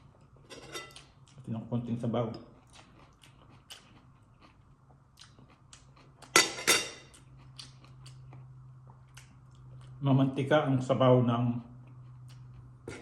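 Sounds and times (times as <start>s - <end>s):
low steady hum: 0.0s - 13.0s
metal spoon clinking on dish: 6.4s - 7.1s.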